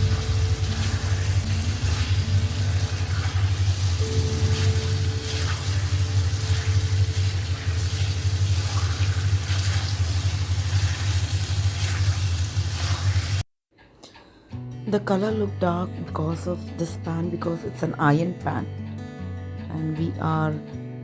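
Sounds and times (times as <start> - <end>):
constant low hum: 0.0 - 11.5
food sizzling in a wok: 0.0 - 13.5.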